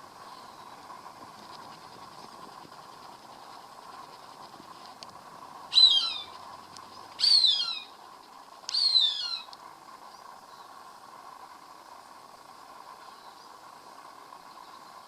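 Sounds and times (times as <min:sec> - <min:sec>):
faint steady hum: 0:00.0 - 0:15.0
hawk calling: 0:05.7 - 0:08.0, 0:08.7 - 0:09.5.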